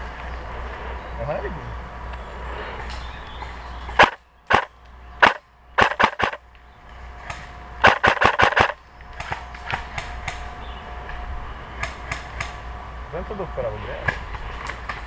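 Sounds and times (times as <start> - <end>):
airsoft guns firing: 4.0 - 6.4, 7.8 - 10.4.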